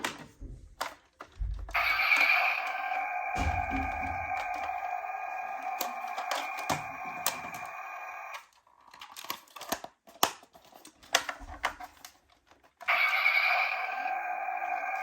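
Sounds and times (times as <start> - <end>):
toy electronic siren: 1.7 - 8.4, 12.8 - 15.0.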